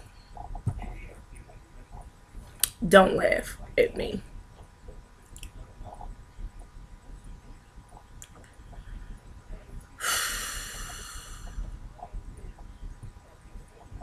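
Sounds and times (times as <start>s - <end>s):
person breathing out: 10.0s - 11.7s.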